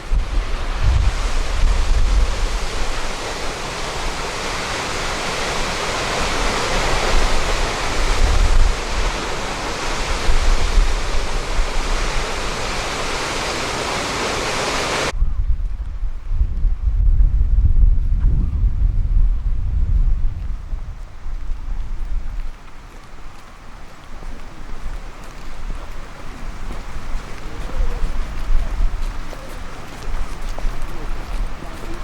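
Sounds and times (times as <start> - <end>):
waterfall roaring: 0.0 - 15.1, 24.2 - 32.0
wind on microphone: 0.0 - 23.7, 24.5 - 32.0.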